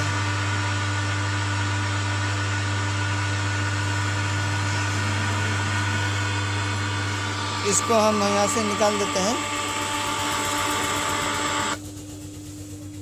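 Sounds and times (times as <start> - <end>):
subwoofer hum: 0.0 - 11.8.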